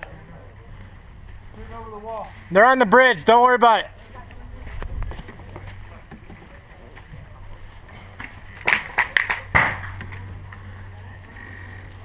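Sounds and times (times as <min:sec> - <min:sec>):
steady low hum: 0:00.0 - 0:12.0
airsoft guns firing: 0:08.6 - 0:10.0.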